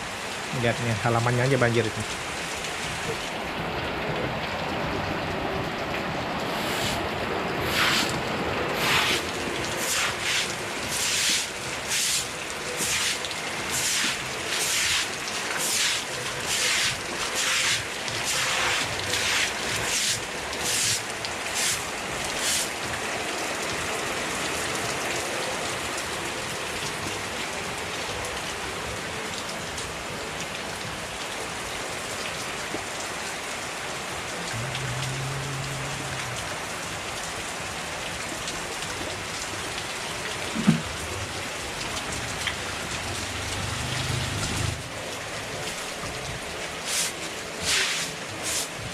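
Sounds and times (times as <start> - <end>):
heavy rain on ground: 0.0 - 48.9
broom sweeping water: 6.5 - 7.0, 7.6 - 8.2, 8.8 - 22.8, 46.8 - 48.8.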